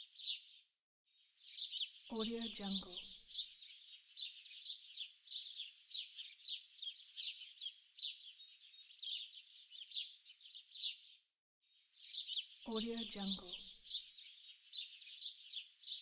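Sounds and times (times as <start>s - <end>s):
small songbirds chirping: 0.0s - 16.0s.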